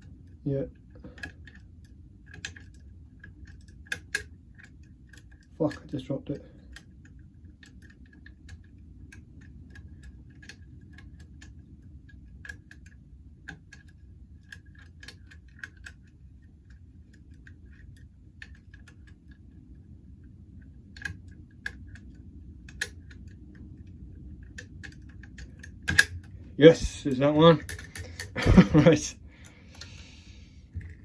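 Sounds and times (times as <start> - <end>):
low steady rumble: 0.0 - 31.0
lock pick metallic clicks: 2.3 - 5.9, 24.4 - 28.6.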